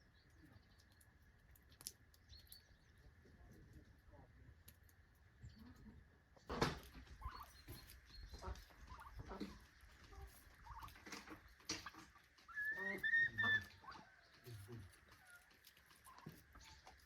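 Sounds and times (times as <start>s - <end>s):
poultry calling: 7.0s - 17.0s.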